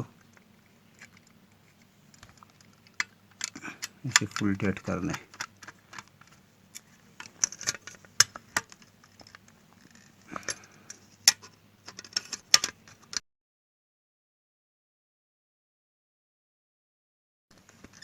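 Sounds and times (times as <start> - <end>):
metallic clicks and scrapes: 0.2 - 13.2.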